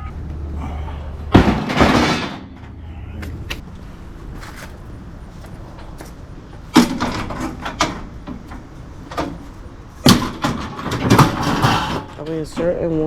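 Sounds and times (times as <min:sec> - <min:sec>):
loud bang: 0:01.3 - 0:02.8.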